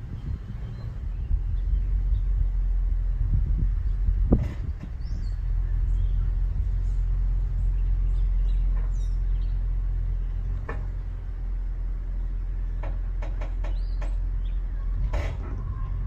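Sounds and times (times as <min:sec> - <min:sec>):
pickup engine rumbling: 0:00.0 - 0:16.0
sharp engine knocks: 0:04.2 - 0:05.4, 0:10.3 - 0:11.2, 0:12.6 - 0:16.0.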